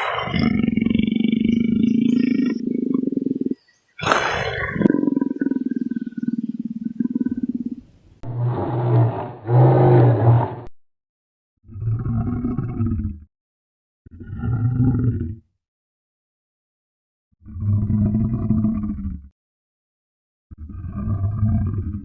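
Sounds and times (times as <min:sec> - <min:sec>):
large animal growling and roaring: 0:00.0 - 0:10.7, 0:11.7 - 0:13.3, 0:14.1 - 0:15.4, 0:17.4 - 0:19.3, 0:20.5 - 0:22.0.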